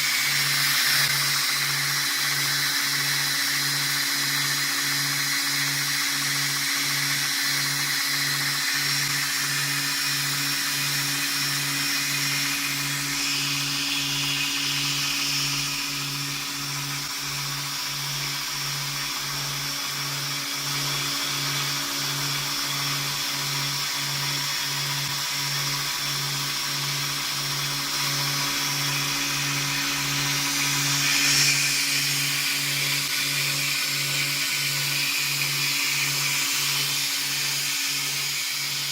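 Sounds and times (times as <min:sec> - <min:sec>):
electric motor hum: 0:00.0 - 0:38.9
sanding belt hiss: 0:00.0 - 0:38.9.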